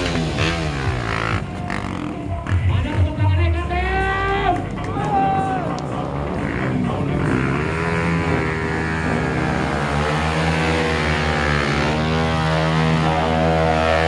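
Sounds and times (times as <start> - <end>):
motorcycle engine at high revs: 0.0 - 3.0, 6.2 - 14.0.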